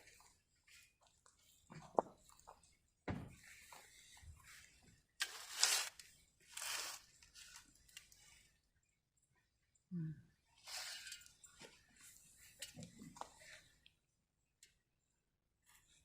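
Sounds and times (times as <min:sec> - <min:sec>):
soft thump: 0:03.1 - 0:03.4.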